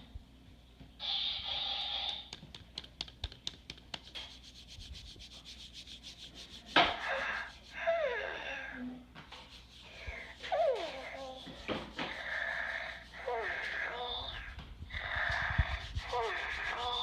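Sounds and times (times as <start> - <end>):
toy harsh breathy rasp: 9.7 - 17.0.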